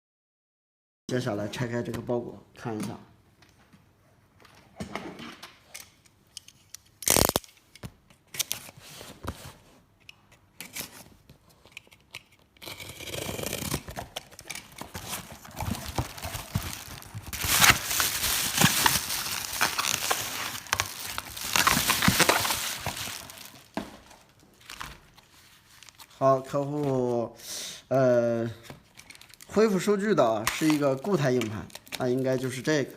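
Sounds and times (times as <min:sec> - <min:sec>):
packaging crinkling and tearing: 0:07.0 - 0:07.5, 0:12.6 - 0:26.2, 0:28.9 - 0:32.8.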